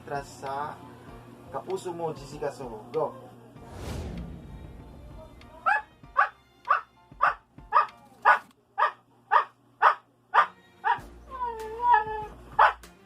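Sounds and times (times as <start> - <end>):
dog barking: 5.7 - 11.0, 11.8 - 12.8.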